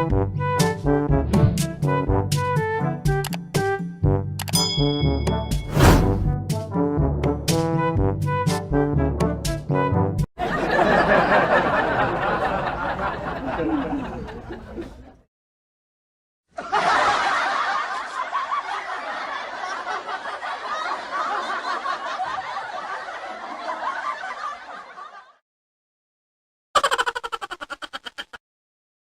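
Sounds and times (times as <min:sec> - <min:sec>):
laughter: 0:10.4 - 0:15.2, 0:16.5 - 0:25.4, 0:26.8 - 0:28.4.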